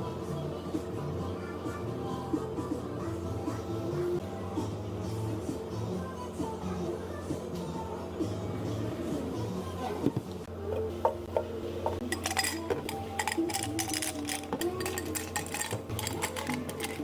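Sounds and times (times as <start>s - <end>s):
soft background music: 0.0s - 17.0s
dishes and utensils clinking: 10.1s - 17.0s.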